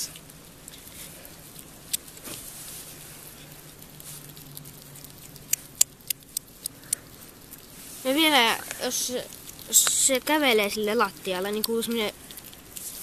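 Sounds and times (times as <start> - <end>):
hedgehog chewing wet smacks: 3.1 - 13.0.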